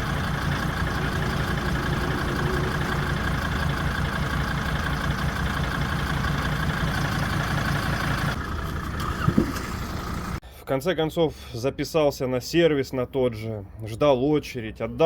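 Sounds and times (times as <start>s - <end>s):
diesel engine idling with knock: 0.0s - 10.4s.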